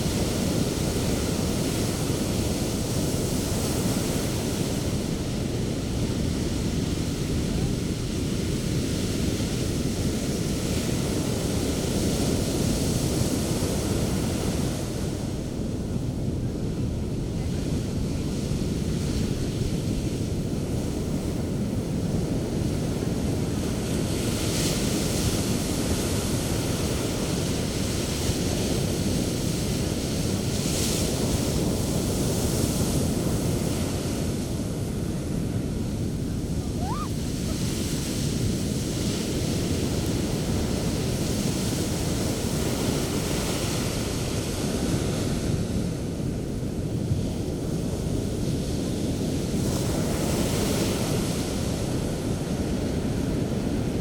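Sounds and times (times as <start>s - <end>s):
sea waves breaking on shore: 0.0s - 54.0s.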